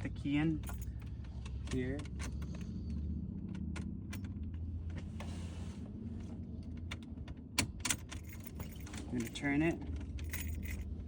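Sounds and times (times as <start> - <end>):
car keys clicking and jangling: 0.4 - 2.7, 6.6 - 11.0.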